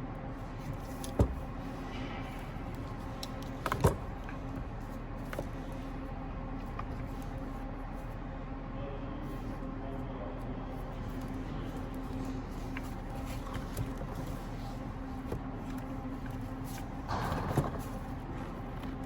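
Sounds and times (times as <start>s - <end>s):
steady background hum: 0.0s - 19.0s.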